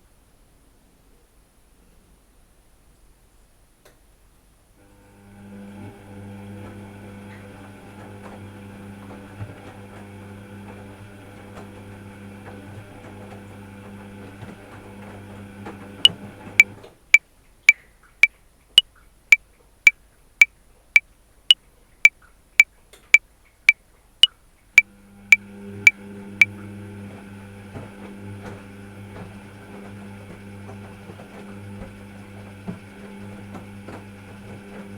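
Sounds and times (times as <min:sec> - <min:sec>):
washing machine motor hum: 0:04.8 - 0:16.9, 0:24.8 - 0:34.9.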